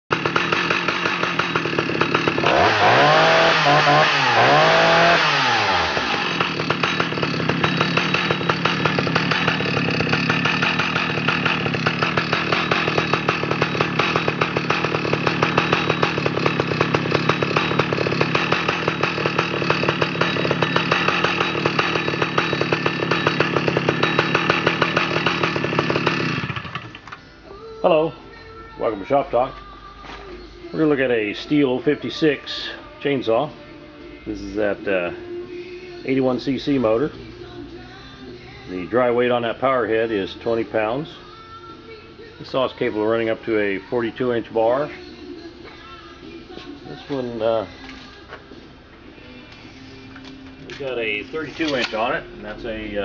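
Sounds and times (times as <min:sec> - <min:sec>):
chainsaw engine revving and idling: 0:00.1 - 0:27.1.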